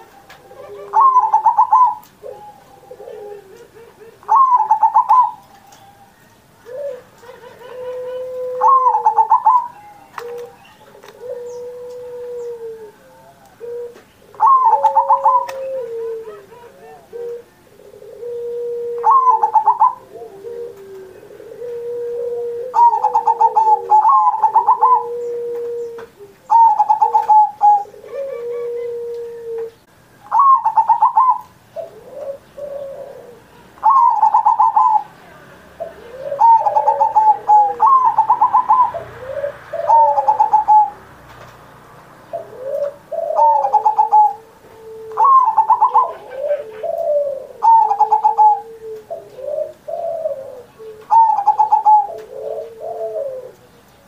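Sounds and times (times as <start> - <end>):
dove cooing: 0.0 - 54.0.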